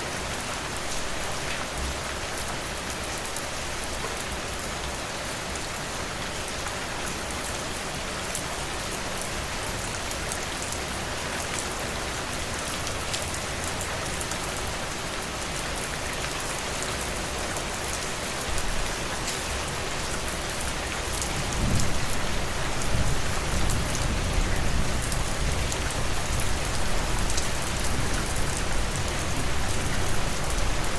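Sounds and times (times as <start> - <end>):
rain pattering on a surface: 0.0 - 30.9.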